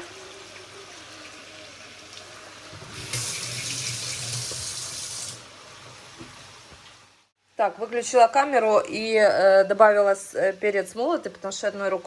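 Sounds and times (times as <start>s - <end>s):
tap water running: 0.0s - 7.3s.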